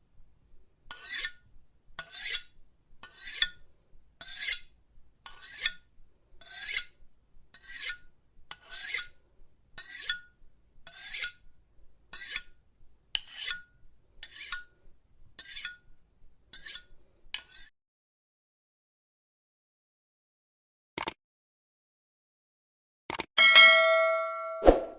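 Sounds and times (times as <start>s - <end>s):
knife blade sharpening scrapes: 0.9s - 1.4s, 2.0s - 3.6s, 4.2s - 7.0s, 7.6s - 9.2s, 9.8s - 10.3s, 10.9s - 11.4s, 12.1s - 12.6s, 13.2s - 14.8s, 15.4s - 15.8s, 16.5s - 17.7s.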